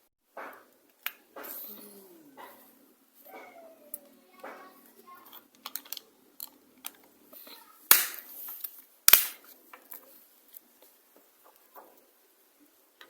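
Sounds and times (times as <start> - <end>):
sharp plastic snaps: 7.9 - 9.5.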